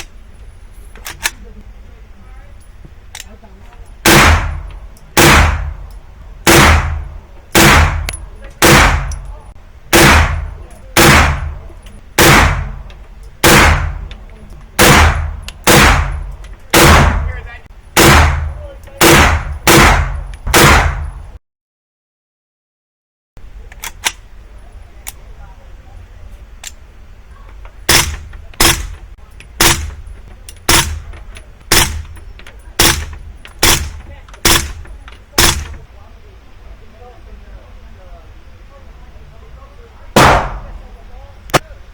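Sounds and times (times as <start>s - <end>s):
carbine gunshots with echo: 4.0s - 9.3s, 9.9s - 14.1s, 14.8s - 17.4s, 18.0s - 21.3s, 27.9s - 29.0s, 29.6s - 30.1s, 30.7s - 32.2s, 32.8s - 35.8s, 40.2s - 40.9s.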